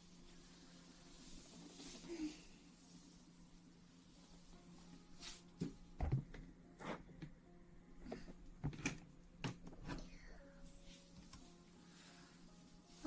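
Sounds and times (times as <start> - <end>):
brushing swishes: 4.0 - 5.6.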